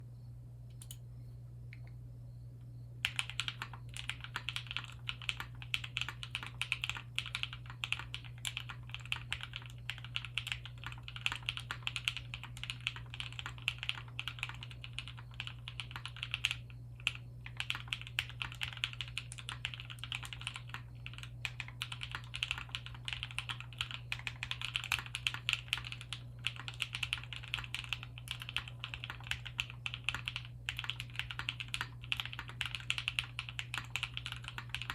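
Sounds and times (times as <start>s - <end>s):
steady low hum: 0.0s - 34.9s
fast mechanical keyboard typing: 3.0s - 34.9s.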